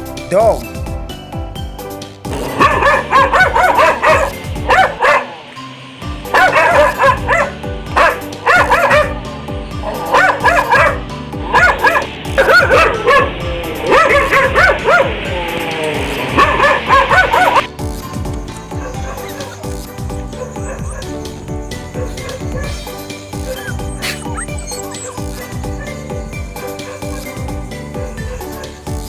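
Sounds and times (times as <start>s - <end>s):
background music: 0.0s - 29.0s
dog barking and yipping: 2.6s - 5.4s, 6.3s - 9.2s, 10.0s - 13.3s, 13.9s - 15.1s, 16.4s - 29.0s.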